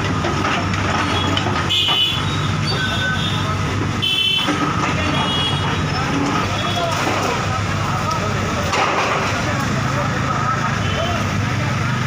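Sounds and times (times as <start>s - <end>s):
heavy diesel engine running: 0.0s - 12.0s.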